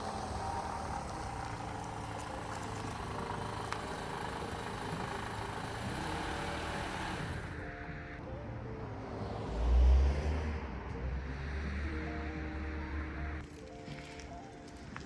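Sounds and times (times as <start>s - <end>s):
engine idling: 0.0s - 7.7s.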